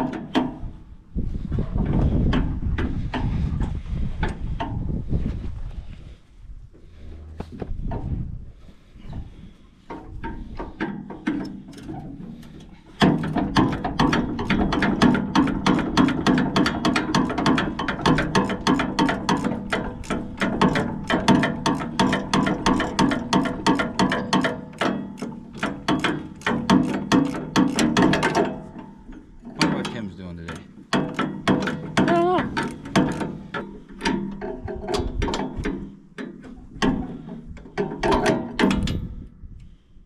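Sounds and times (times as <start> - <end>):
ratchet wrench clicking: 13.5 - 28.5.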